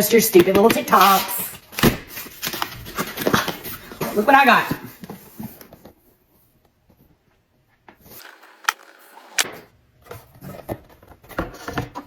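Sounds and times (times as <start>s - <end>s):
cardboard packaging rustling: 0.7s - 4.3s.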